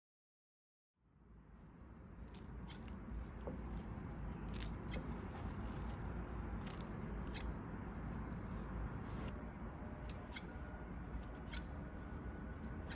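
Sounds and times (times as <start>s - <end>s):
low background rumble: 1.1s - 12.9s
scissors snipping: 2.3s - 7.5s.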